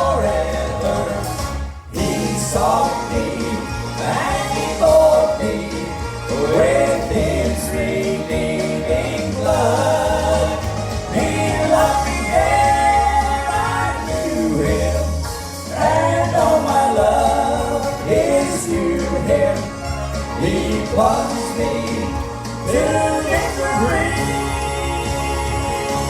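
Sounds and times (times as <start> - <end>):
instrumental accompaniment with bass: 0.0 - 26.0
vocal trio singing gospel: 0.0 - 26.0.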